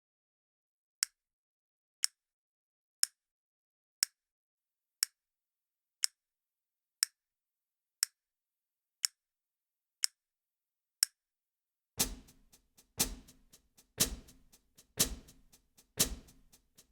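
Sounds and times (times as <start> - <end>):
clock ticking: 12.0 - 16.6.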